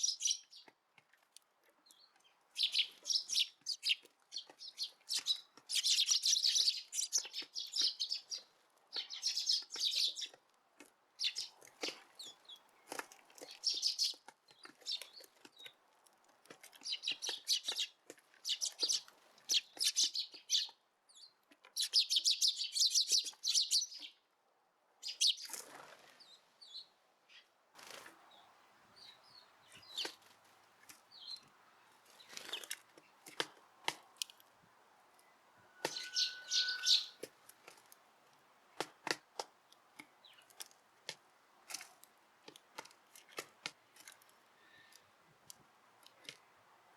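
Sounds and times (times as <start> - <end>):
sparrows chirping: 0.0 - 0.7, 1.8 - 10.4, 11.1 - 15.8, 16.7 - 24.2, 25.0 - 25.6, 26.2 - 27.5, 28.2 - 33.4, 35.1 - 37.3, 39.7 - 40.6.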